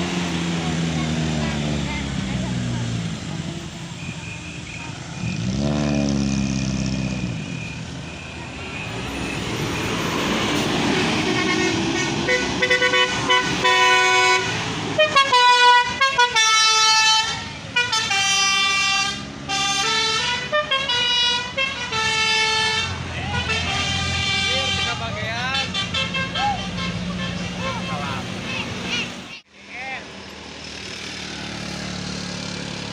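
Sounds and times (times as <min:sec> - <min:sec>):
vehicle engine passing: 0:00.0 - 0:17.7, 0:22.4 - 0:32.9
multi-tone bus air horn tune: 0:11.2 - 0:28.2.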